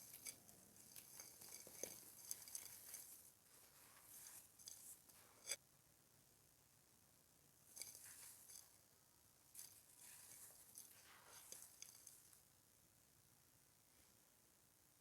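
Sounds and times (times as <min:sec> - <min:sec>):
clay pot crumbling: 0:00.0 - 0:05.6.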